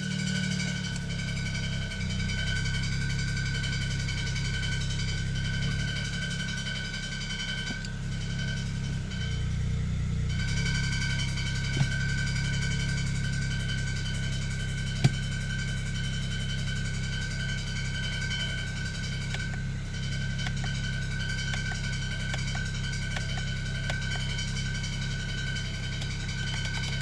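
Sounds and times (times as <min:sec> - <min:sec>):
car engine running: 0:00.0 - 0:27.0
high whine: 0:00.0 - 0:27.0
transmission clicks and ticks: 0:17.3 - 0:27.0.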